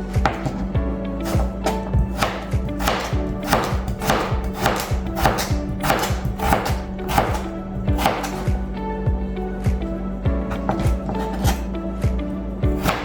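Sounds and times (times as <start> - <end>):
background music: 0.0 - 13.0
knife chopping potatoes on board: 0.2 - 8.6, 10.5 - 11.7, 12.7 - 13.0.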